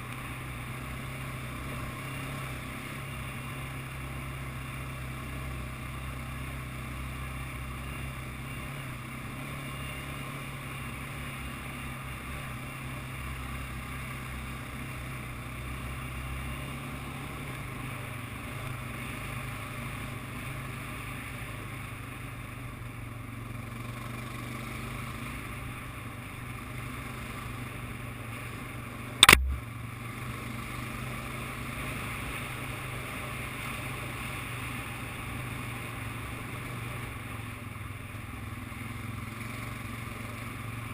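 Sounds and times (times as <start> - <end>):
atv engine running: 0.0 - 40.9
sharp loud knock: 29.2 - 29.6.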